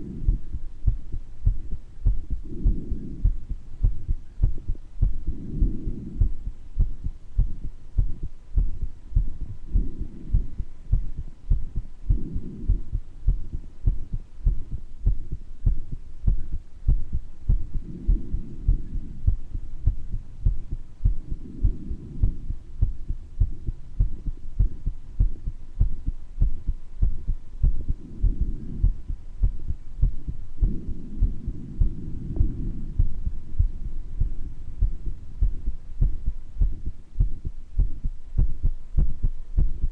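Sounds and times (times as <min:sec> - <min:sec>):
breath sounds: 0:00.0 - 0:15.8, 0:16.9 - 0:25.5, 0:26.4 - 0:36.9
heartbeat thumps: 0:00.0 - 0:39.9.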